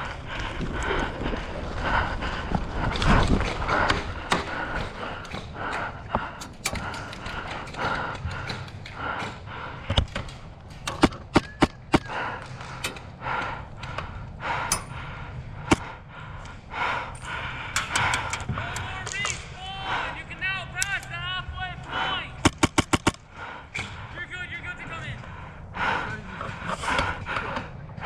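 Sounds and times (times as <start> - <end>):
airsoft gun shots: 22.4 - 23.2.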